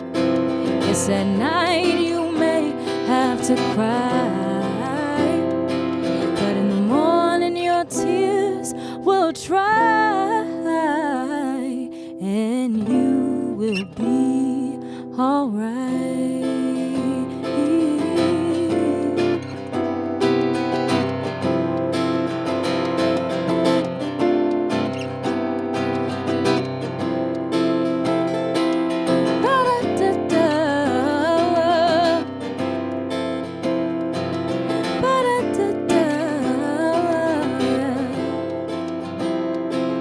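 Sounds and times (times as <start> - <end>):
person singing wordless vocals: 0.0 - 19.8, 29.4 - 32.6, 34.6 - 39.0
acoustic guitar strumming: 0.0 - 40.0.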